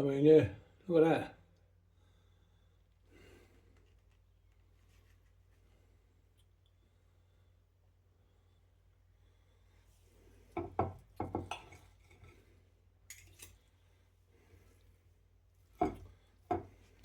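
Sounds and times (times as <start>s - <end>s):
kitchenware knocks and clatters: 10.6s - 12.3s, 15.8s - 16.8s.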